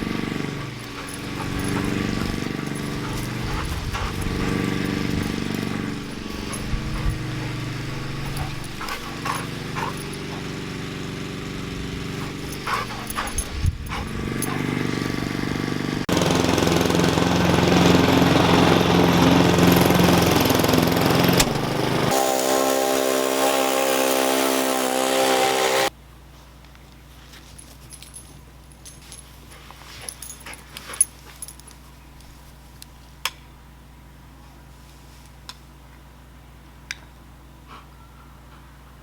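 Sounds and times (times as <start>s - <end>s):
lawn mower engine running: 0.0s - 25.9s.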